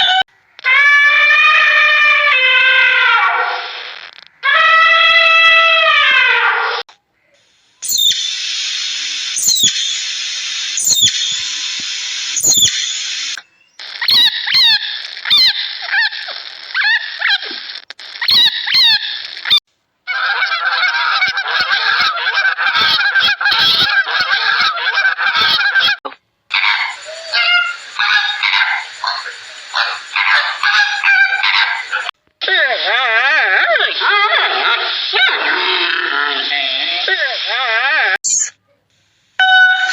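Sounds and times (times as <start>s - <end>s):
steady hiss: 7.4s - 13.6s, 26.8s - 32.1s, 38.8s - 39.4s
geese honking: 20.1s - 32.1s.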